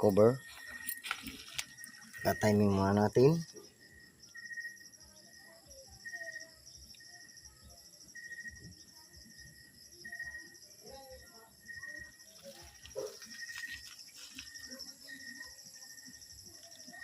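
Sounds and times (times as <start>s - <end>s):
insects chirping: 0.0s - 17.0s.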